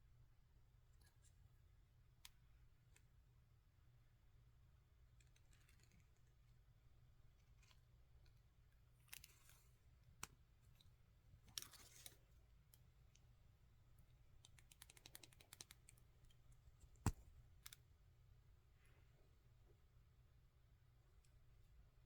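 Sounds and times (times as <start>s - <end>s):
small clicks: 14.4s - 17.8s.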